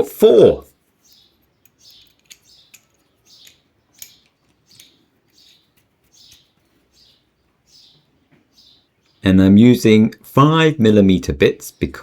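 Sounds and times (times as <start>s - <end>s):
small bird chirping: 0.8s - 9.4s.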